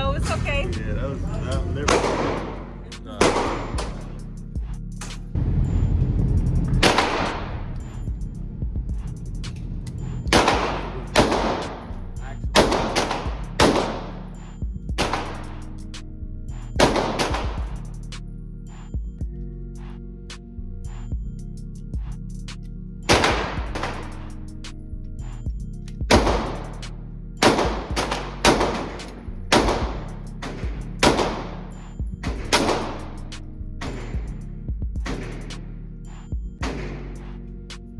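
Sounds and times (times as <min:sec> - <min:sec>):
background music: 0:00.0 - 0:37.9
gunshots with ringing tail: 0:01.8 - 0:04.2, 0:06.8 - 0:07.8, 0:10.3 - 0:14.3, 0:15.0 - 0:15.6, 0:16.8 - 0:17.7, 0:23.1 - 0:24.3, 0:26.1 - 0:26.8, 0:27.4 - 0:33.2, 0:35.0 - 0:35.6, 0:36.6 - 0:37.3.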